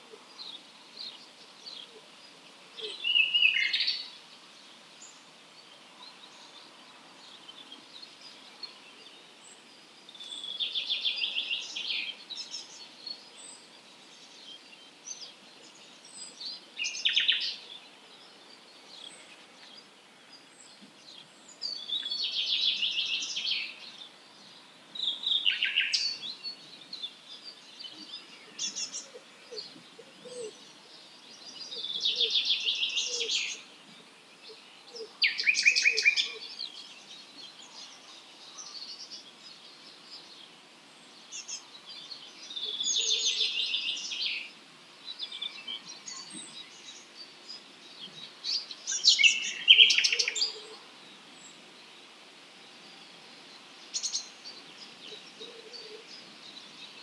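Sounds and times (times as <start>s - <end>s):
loud high-pitched birdsong: 6.0s - 52.1s, 52.7s - 57.0s.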